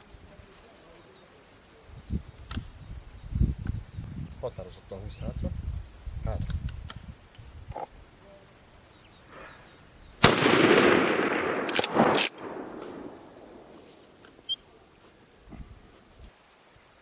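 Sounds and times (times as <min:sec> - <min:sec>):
rifle shot with echo: 0:10.2 - 0:14.4.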